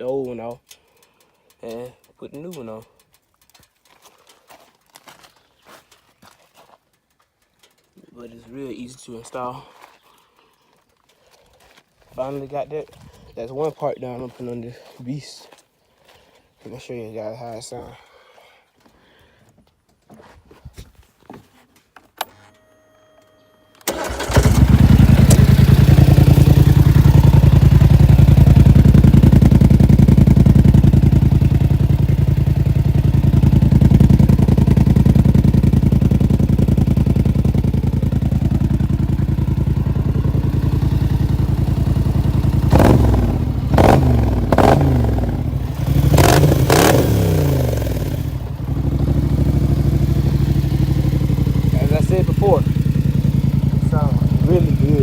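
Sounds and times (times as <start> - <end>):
engine revving blips: 22.3 - 55.0
atv engine idling loudly: 24.0 - 55.0.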